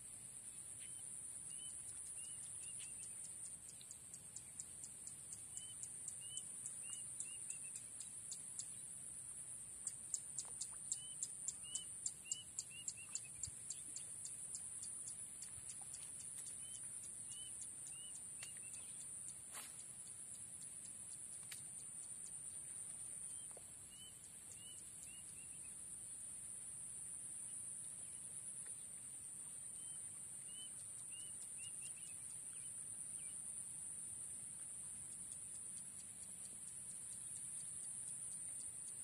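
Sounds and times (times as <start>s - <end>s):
crickets droning: 0.0s - 39.0s
short insect chirps: 0.4s - 26.7s, 27.5s - 33.7s, 34.3s - 39.0s
rapid clicking ticks: 18.1s - 22.4s.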